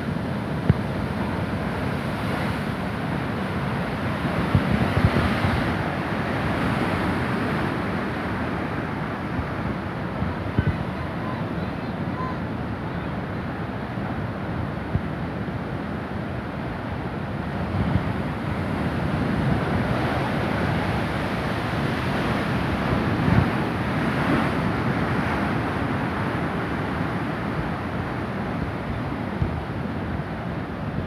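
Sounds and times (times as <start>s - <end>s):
wind buffeting microphone: 17.7s - 31.0s.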